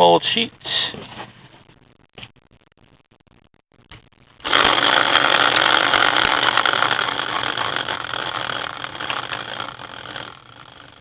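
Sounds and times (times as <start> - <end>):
prize wheel rattling: 4.4 - 11.0.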